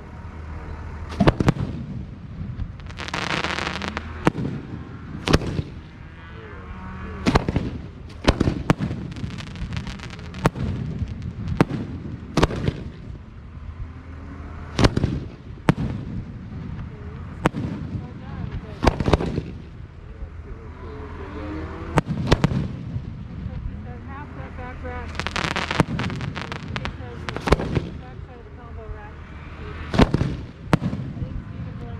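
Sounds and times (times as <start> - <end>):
crackling hiss: 0.0 - 31.9
firework shells bursting: 1.1 - 6.0, 7.2 - 13.1, 25.1 - 28.0.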